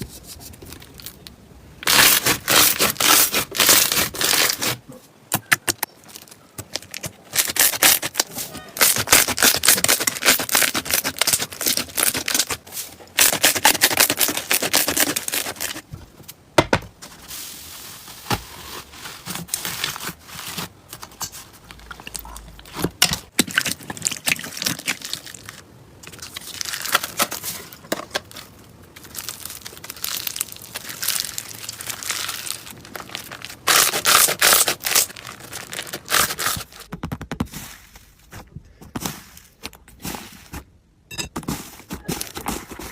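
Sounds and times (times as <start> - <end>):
slime crackling and popping: 29.0 - 36.6.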